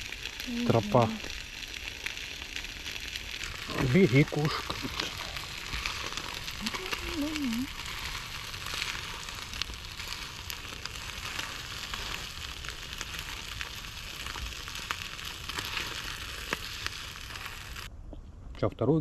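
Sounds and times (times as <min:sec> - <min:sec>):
food sizzling: 0:00.0 - 0:17.9
fat spattering pops: 0:03.4 - 0:10.1.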